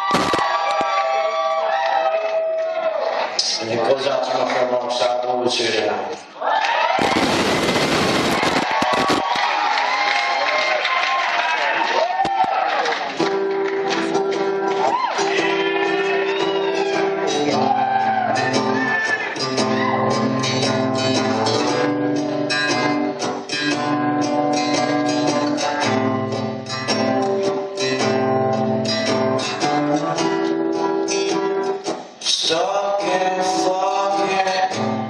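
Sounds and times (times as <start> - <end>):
acoustic guitar strumming: 13.2 - 35.0.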